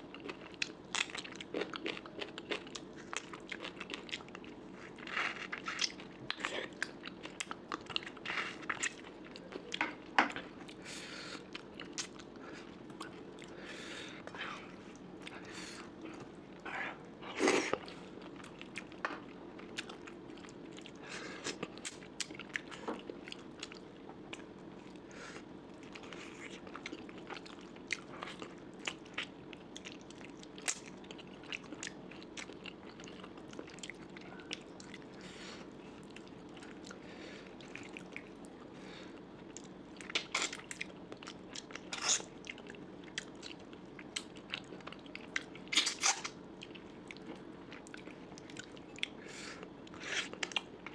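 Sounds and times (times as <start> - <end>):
steady low hum: 0.0 - 50.9
person chewing and biting food: 0.2 - 9.8, 39.5 - 50.9.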